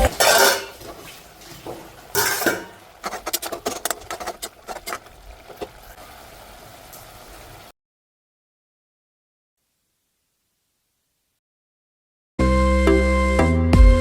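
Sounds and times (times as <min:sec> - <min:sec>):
utensils clinking against dishes: 0:00.0 - 0:00.9, 0:02.2 - 0:04.2
utensil scraping dish: 0:00.0 - 0:01.0, 0:01.6 - 0:05.7.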